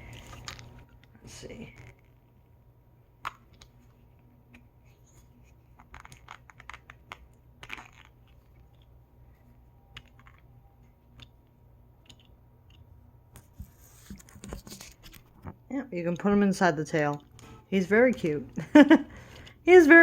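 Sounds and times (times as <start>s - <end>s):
plastic toy parts clicking: 9.9s - 10.5s, 12.0s - 12.8s.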